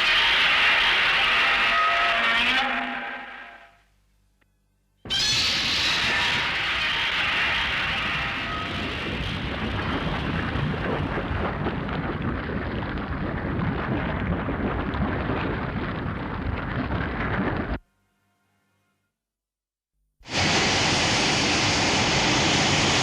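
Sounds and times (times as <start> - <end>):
rumbling crackling explosion roar: 5.2 - 17.8, 20.2 - 23.0.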